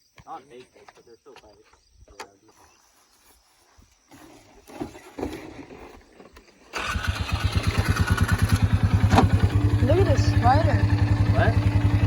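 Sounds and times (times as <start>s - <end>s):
atv engine idling: 6.8s - 12.0s.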